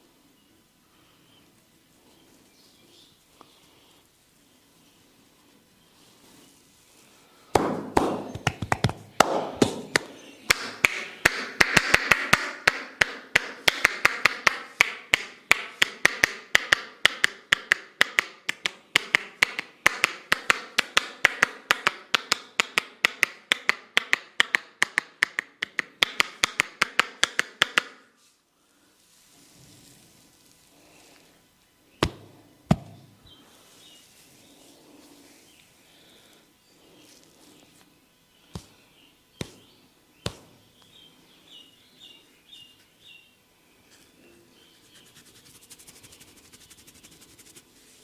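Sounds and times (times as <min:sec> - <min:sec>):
hands tapping on head: 0:07.5 - 0:28.0, 0:32.0 - 0:33.1, 0:38.5 - 0:38.8, 0:39.4 - 0:40.6.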